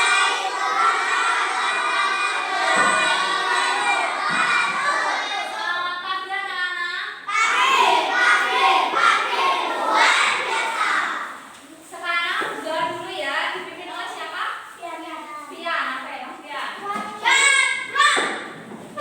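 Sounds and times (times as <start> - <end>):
children shouting: 0.0 - 6.0, 7.3 - 11.4.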